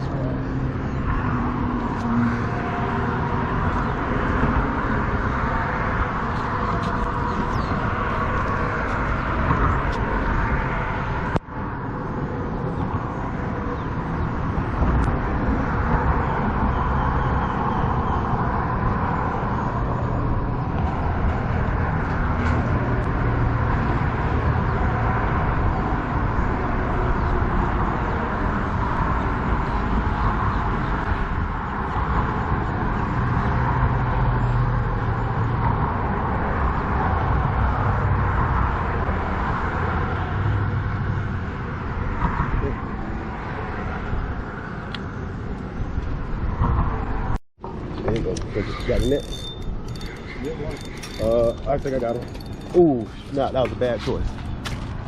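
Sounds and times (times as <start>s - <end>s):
traffic passing: 0.0s - 55.0s.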